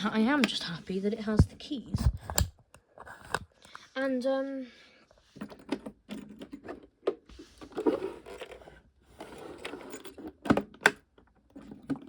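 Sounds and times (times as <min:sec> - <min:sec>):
plastic phone scraping and rustling: 0:01.4 - 0:03.6, 0:05.3 - 0:10.6.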